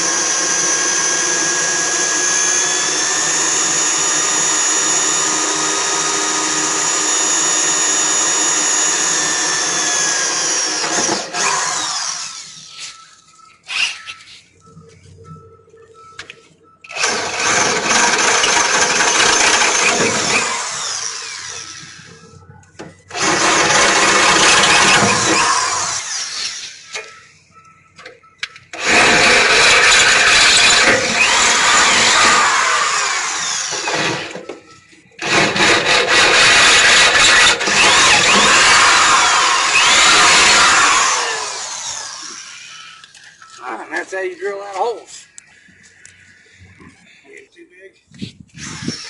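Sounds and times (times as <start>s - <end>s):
electric drill boring through steel: 0.0s - 13.0s, 16.9s - 22.2s, 23.1s - 27.1s, 28.7s - 34.5s, 35.2s - 43.5s, 48.6s - 49.0s.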